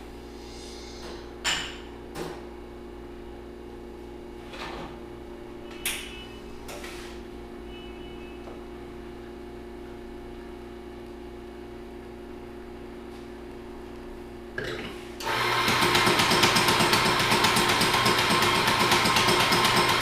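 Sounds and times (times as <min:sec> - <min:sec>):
machine hum: 0:00.0 - 0:20.0
coffee grinder grinding beans: 0:15.2 - 0:20.0.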